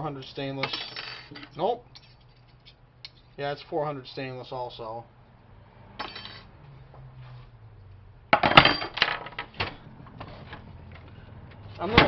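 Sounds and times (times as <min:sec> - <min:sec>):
metal parts clattering: 0:00.6 - 0:02.8, 0:08.4 - 0:09.7.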